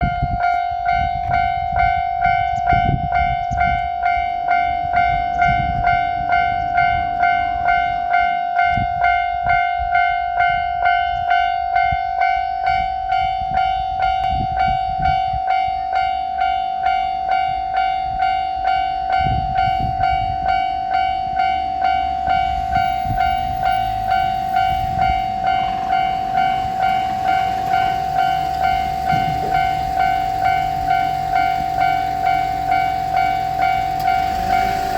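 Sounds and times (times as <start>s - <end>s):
railroad crossing bell ringing: 0.0s - 34.9s
low rumbling: 19.2s - 34.9s.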